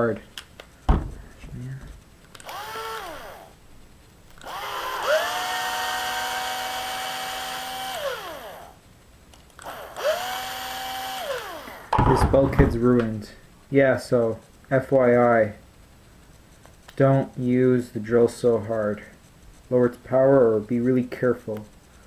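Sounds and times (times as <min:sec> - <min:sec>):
drill motor driving screws: 0:02.3 - 0:03.6, 0:04.4 - 0:08.8, 0:09.6 - 0:11.9.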